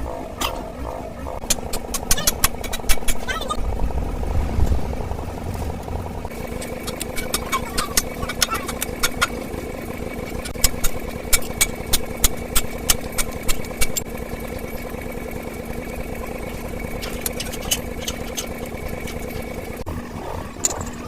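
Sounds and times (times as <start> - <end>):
engine running: 0.0 - 21.0
sharp metallic taps: 1.4 - 3.3.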